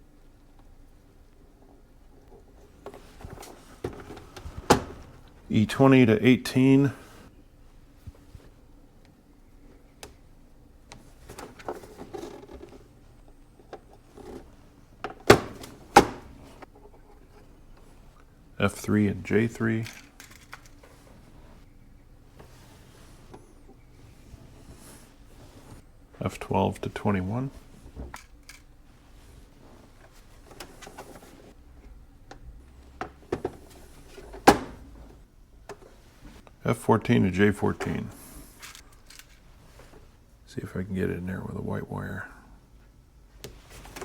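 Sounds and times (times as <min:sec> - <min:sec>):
wire handling rustling: 0:09.5 - 0:36.6, 0:37.7 - 0:40.2.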